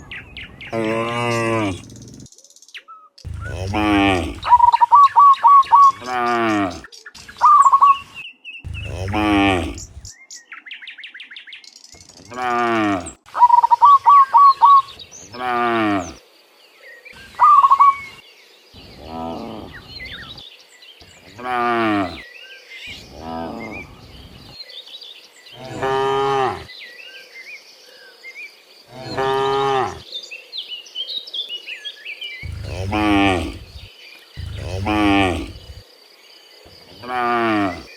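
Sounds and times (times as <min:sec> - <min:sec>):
bird chirps: 0:00.0 - 0:15.4, 0:31.7 - 0:35.8
cattle mooing: 0:00.8 - 0:02.0, 0:03.3 - 0:04.7, 0:08.7 - 0:10.1, 0:12.4 - 0:13.2, 0:21.4 - 0:22.2, 0:32.4 - 0:35.8, 0:37.0 - 0:37.9.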